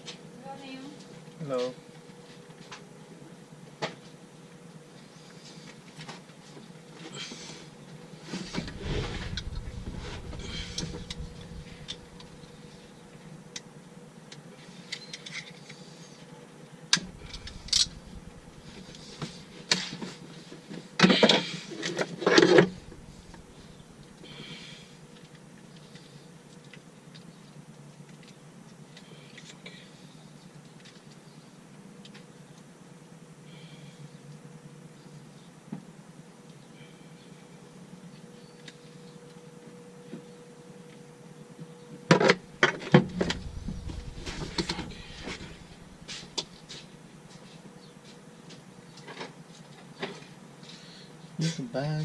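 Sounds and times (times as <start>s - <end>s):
rattling scrapes: 8.4s - 13.0s, 17.0s - 19.4s, 42.4s - 47.0s
faint steady hum: 8.4s - 15.0s, 16.9s - 19.8s, 22.3s - 47.9s.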